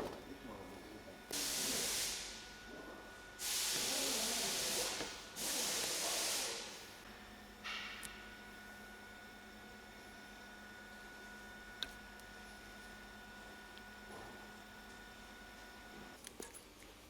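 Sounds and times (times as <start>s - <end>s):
aerosol spray hissing: 1.4s - 2.4s, 3.4s - 6.8s.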